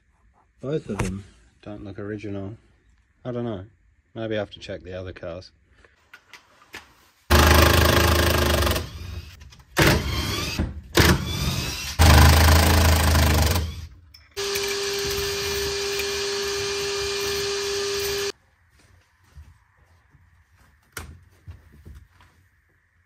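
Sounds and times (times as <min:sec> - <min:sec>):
power drill running: 0:07.3 - 0:18.4.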